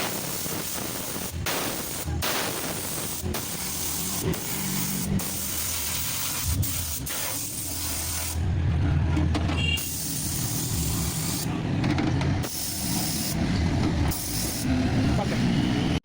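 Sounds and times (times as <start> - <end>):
spray paint hissing: 0.0 - 8.4, 9.7 - 11.5, 12.4 - 13.4, 14.1 - 14.7.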